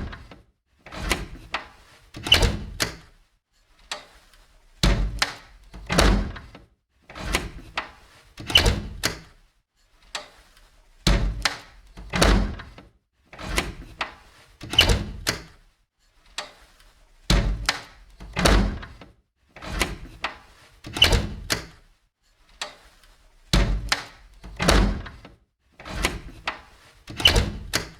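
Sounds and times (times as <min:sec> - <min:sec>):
door closing thuds: 0:02.2 - 0:03.0, 0:04.8 - 0:06.5, 0:08.4 - 0:09.2, 0:11.1 - 0:12.8, 0:14.6 - 0:15.5, 0:17.3 - 0:19.0, 0:20.9 - 0:21.7, 0:23.6 - 0:25.2, 0:27.1 - 0:27.9
door rattling: 0:02.2 - 0:03.0, 0:05.8 - 0:06.5, 0:08.4 - 0:09.2, 0:11.1 - 0:12.8, 0:14.7 - 0:15.5, 0:17.3 - 0:19.0, 0:20.9 - 0:21.7, 0:23.6 - 0:25.2, 0:25.9 - 0:27.9
door latch clicks: 0:20.9 - 0:21.7, 0:27.1 - 0:27.9.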